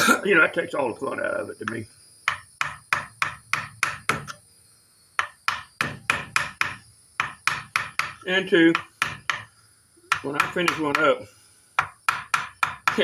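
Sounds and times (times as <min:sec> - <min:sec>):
mallet tapping chisel into wood: 0:02.2 - 0:04.4, 0:05.2 - 0:08.2, 0:08.8 - 0:09.5, 0:10.1 - 0:11.1, 0:11.8 - 0:13.0.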